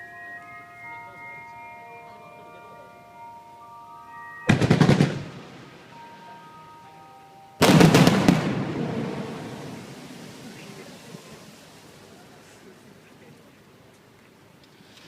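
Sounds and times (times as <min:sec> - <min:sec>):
music with held notes: 0:00.0 - 0:10.0
fireworks cracking bangs: 0:04.5 - 0:05.9, 0:07.6 - 0:11.6.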